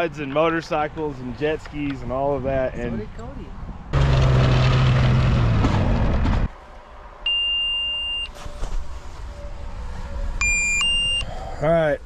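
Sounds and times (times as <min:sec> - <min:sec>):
high electronic beep: 0:07.3 - 0:08.3, 0:10.4 - 0:11.2.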